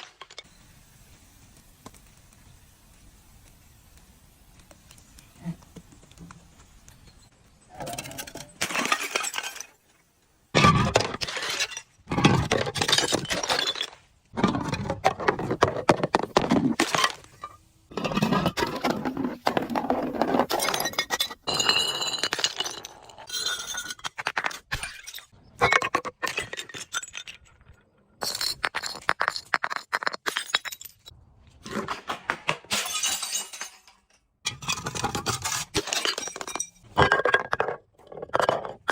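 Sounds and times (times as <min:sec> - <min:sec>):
glass bottles crushing: 0:07.9 - 0:09.9, 0:10.6 - 0:31.1, 0:32.7 - 0:38.9.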